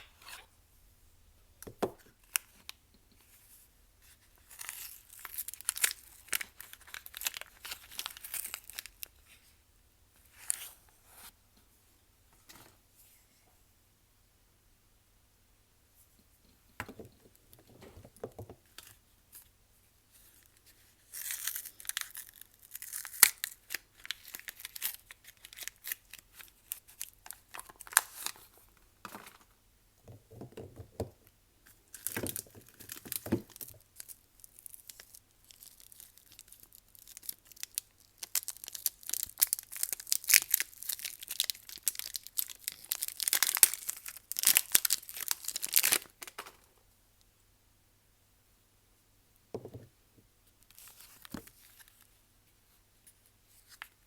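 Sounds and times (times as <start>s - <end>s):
packaging tearing and crinkling: 4.5s - 9.1s, 21.1s - 28.4s, 31.9s - 46.4s.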